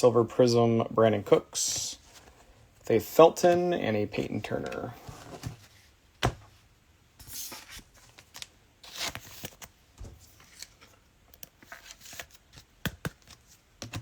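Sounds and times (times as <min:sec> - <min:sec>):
trading cards sliding and flipping: 0:01.7 - 0:05.8, 0:07.2 - 0:14.0.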